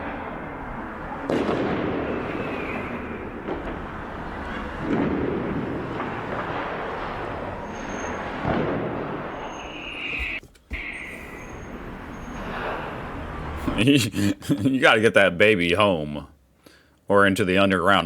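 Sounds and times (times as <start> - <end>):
firework bangs: 0.0 - 13.9
firecrackers steady din: 0.0 - 15.0.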